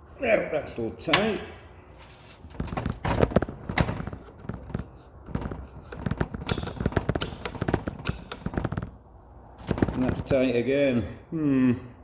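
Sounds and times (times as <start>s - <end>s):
air compressor clicks and knocks: 2.5s - 10.3s.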